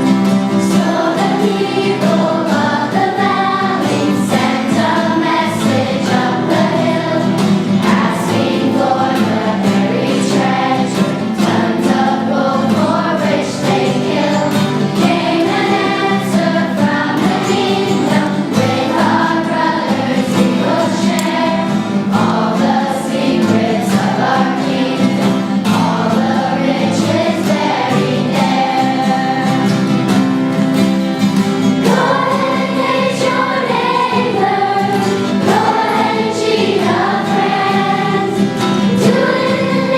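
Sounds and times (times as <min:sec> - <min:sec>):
children's choir singing: 0:00.0 - 0:39.9.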